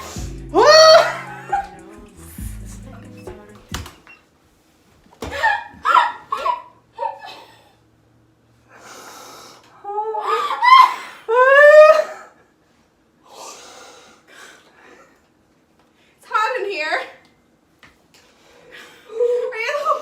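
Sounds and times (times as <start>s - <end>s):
high-pitched squeals: 0.0s - 4.2s.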